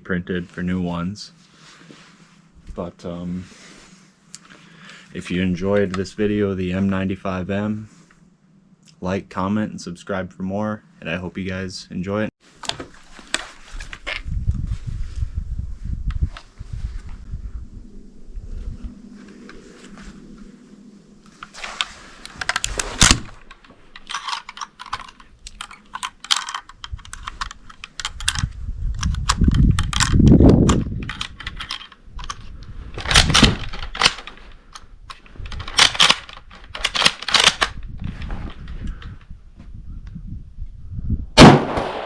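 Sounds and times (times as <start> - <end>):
low rumble: 14.2 - 23.5
rifle metallic clicks: 21.4 - 32.4, 35.5 - 37.7.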